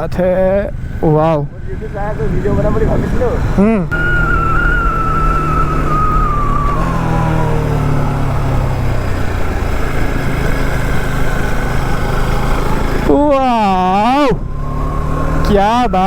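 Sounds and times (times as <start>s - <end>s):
motorcycle engine running: 0.2s - 16.0s
wind rushing over microphone: 2.1s - 9.5s.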